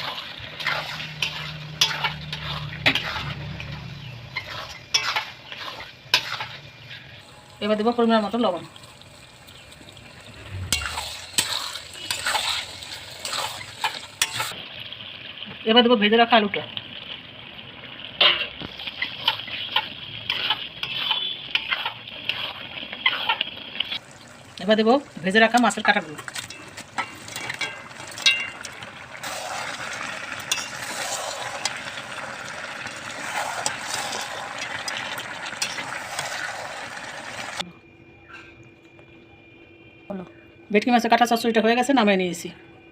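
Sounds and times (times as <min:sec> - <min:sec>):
spoon scraping a pan: 0:00.0 - 0:07.2, 0:10.5 - 0:14.6, 0:18.2 - 0:24.0, 0:25.6 - 0:37.0
light sizzle: 0:00.0 - 0:37.7.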